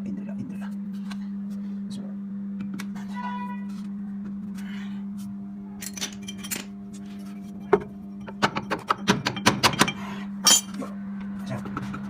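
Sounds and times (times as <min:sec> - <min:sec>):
steady low hum: 0:00.0 - 0:12.0
metallic clinks and knocks: 0:05.8 - 0:06.8, 0:07.6 - 0:10.8.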